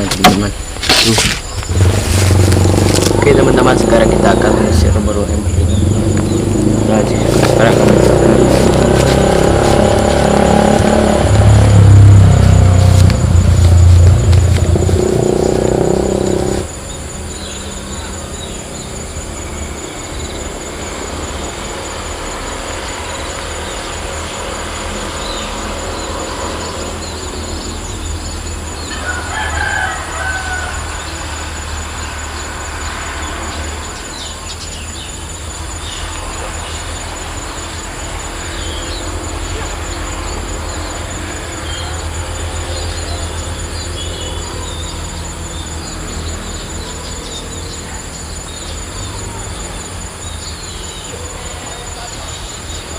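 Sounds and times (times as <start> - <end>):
small birds chirping: 0.0 - 52.9
loud low rumble: 1.6 - 16.7
rooster crowing: 28.8 - 31.7.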